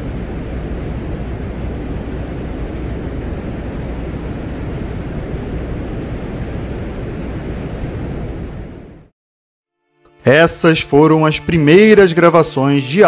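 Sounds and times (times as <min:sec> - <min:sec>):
soft wind blowing: 0:00.0 - 0:09.1
static hiss: 0:00.0 - 0:09.1.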